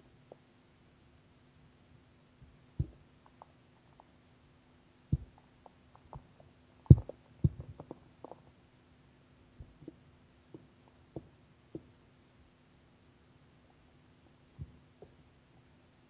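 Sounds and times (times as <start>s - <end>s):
faint steady hum: 0.0s - 16.0s
stomach growling: 5.2s - 8.5s.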